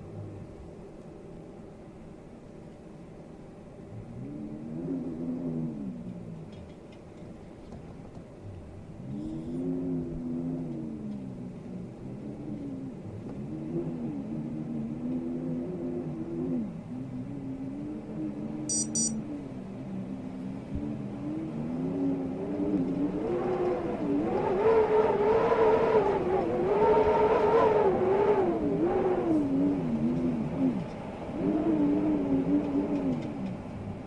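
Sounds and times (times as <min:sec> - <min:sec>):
howling storm wind: 0:00.0 - 0:34.0.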